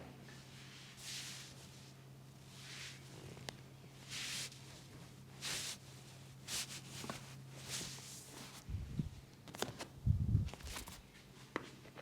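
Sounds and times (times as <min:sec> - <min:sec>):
hands rubbing skin and hair: 0:05.4 - 0:05.8, 0:06.4 - 0:08.6.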